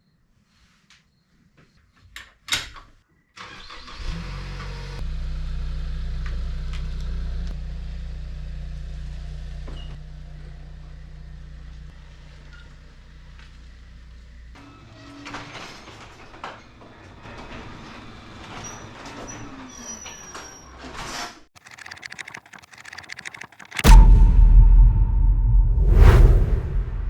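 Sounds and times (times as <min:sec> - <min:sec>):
engine cranking and idling: 0:21.6 - 0:24.1.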